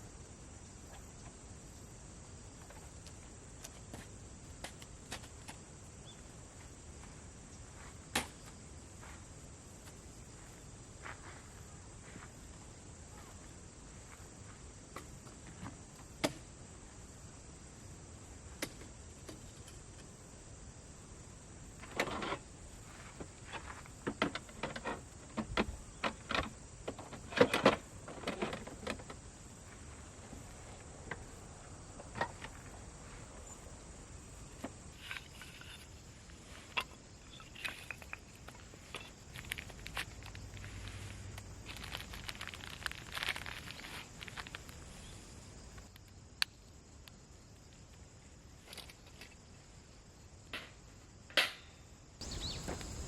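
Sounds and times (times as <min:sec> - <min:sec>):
faint steady hiss: 0:00.0 - 0:53.0
handling knocks and rustles: 0:34.5 - 0:44.8, 0:52.2 - 0:53.0.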